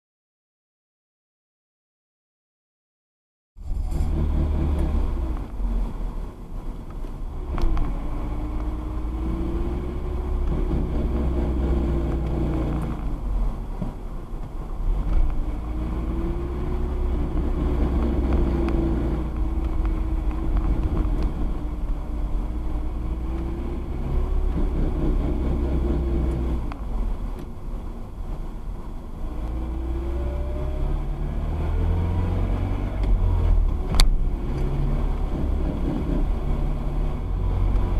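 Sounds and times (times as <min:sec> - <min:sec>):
droning tone: 0:03.6 - 0:05.3
car engine: 0:03.6 - 0:37.9
road rumble: 0:03.6 - 0:37.9.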